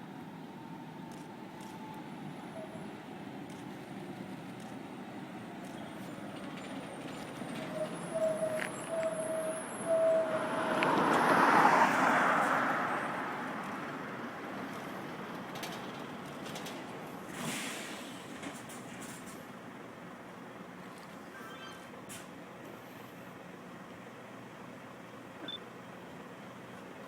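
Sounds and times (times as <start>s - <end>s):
heavy truck passing: 0.3s - 24.8s
short beeps: 25.4s - 25.6s.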